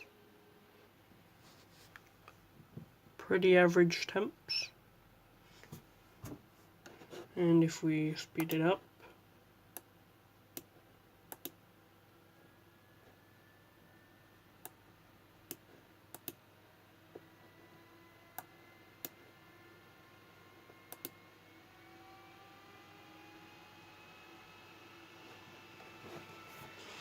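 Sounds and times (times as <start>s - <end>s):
sharp clicks: 11.3s - 11.6s, 20.9s - 21.2s
fan whine rising in pitch: 12.3s - 14.6s, 16.4s - 27.0s.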